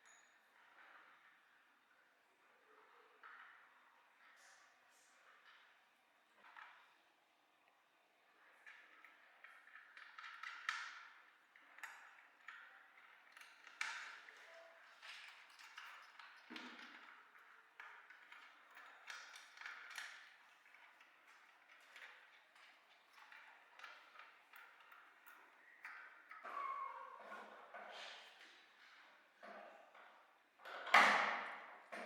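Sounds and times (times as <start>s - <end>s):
small tools clicking and tapping: 8.9s - 26.5s.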